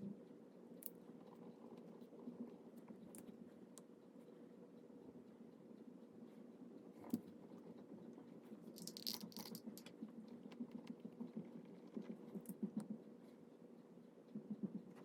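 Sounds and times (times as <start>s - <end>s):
light tapping and pattering: 6.3s - 13.5s, 14.2s - 15.0s.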